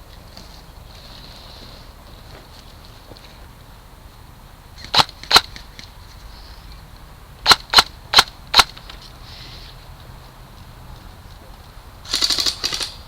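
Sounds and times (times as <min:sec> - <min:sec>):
airsoft gun shots: 0:04.9 - 0:05.6, 0:07.4 - 0:08.8, 0:12.0 - 0:13.0.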